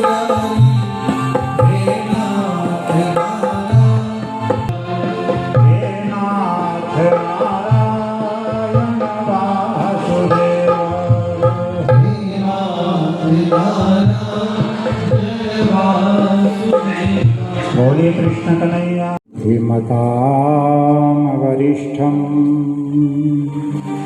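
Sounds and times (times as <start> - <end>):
hand drum beats: 0.0 - 12.8
chanted singing: 0.0 - 24.0.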